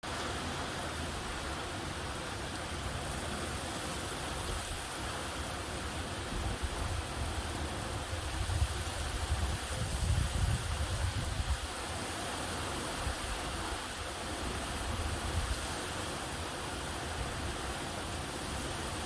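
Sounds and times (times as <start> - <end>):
wind gusts buffeting microphone: 7.9 - 11.8.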